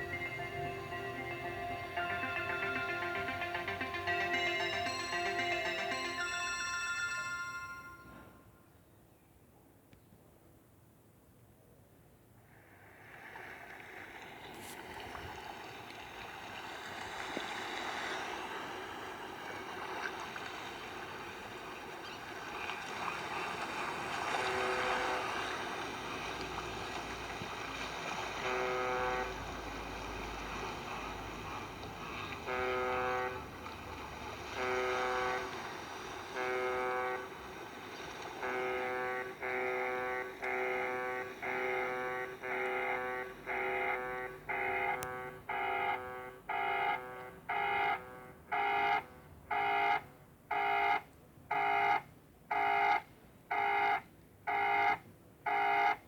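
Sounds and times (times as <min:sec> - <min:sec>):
phone ringtone: 0:00.0 - 0:08.4.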